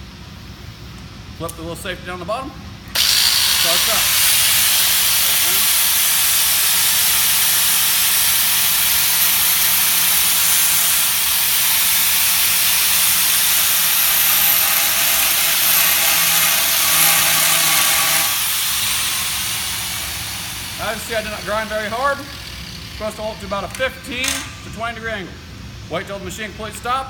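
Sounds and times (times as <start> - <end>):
angle grinder grinding: 3.0 - 23.1.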